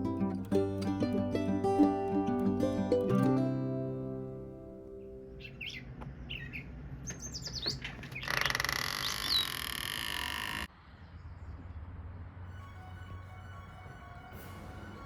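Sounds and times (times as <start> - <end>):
bird chirping: 4.9 - 9.6.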